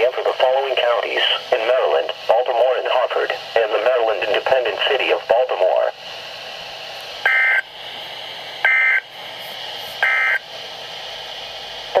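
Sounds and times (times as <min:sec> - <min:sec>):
radio hiss: 0:00.0 - 0:12.0
digital data tone bursts: 0:07.3 - 0:07.7, 0:08.6 - 0:09.0, 0:10.0 - 0:10.4.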